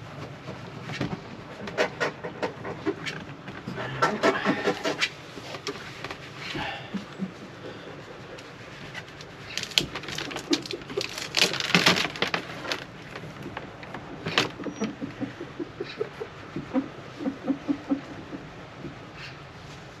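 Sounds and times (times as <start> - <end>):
clicks and knocks of handwork: 8.4 - 15.0.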